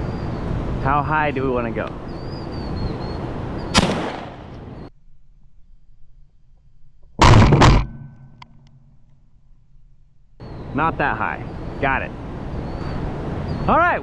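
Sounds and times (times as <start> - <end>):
shotgun blasts: 3.7 - 4.5, 7.2 - 8.4.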